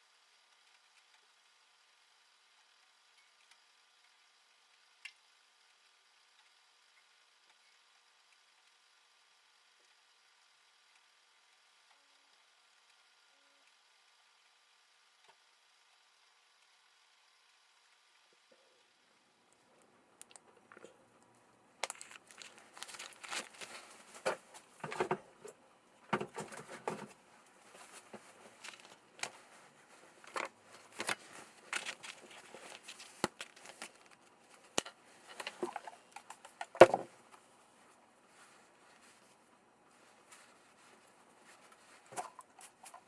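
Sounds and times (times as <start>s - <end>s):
small parts clicking: 19.5s - 24.1s
crinkling rustles: 19.7s - 43.0s.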